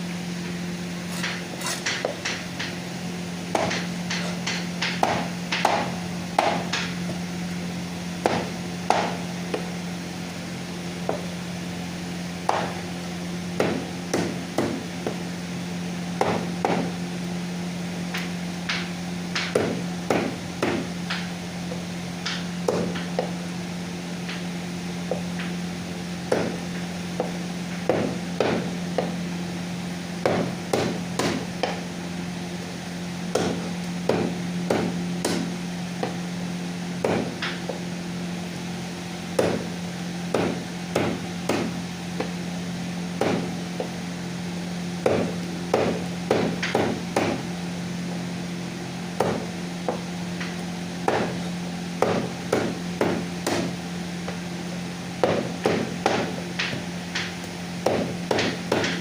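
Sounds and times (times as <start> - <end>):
steady low hum: 0.0 - 59.0
cleaver chopping on wooden block: 3.5 - 6.9, 8.2 - 9.6, 12.5 - 12.8, 13.6 - 15.2, 16.2 - 16.9, 19.4 - 21.2, 22.2 - 23.3, 26.3 - 26.6, 27.9 - 29.1, 30.2 - 31.8, 33.3 - 36.2, 37.0 - 37.6, 39.4 - 39.7, 40.3 - 42.3, 43.2 - 43.9, 45.0 - 47.4, 49.2 - 50.0, 51.1 - 51.4, 52.0 - 53.7, 55.2 - 59.0.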